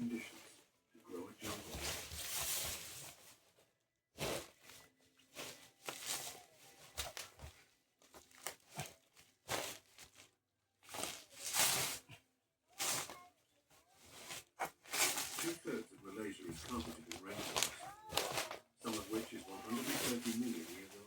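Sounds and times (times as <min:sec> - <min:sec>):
packaging tearing and rustling: 0:05.4 - 0:12.1, 0:14.0 - 0:15.8, 0:16.5 - 0:21.0.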